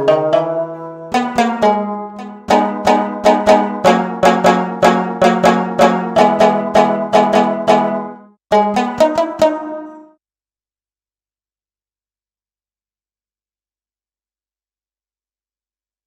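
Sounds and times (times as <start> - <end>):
plucked string instrument notes: 0.0 - 10.2.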